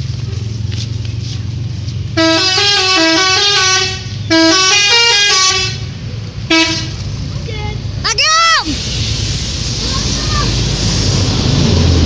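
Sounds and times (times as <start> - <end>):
bus engine humming: 0.0 - 12.0
multi-tone musical bus horn: 2.2 - 7.0.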